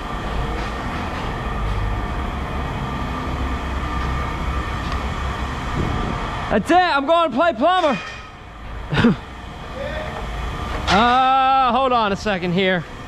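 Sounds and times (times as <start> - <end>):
machinery rumbling: 0.0 - 13.0.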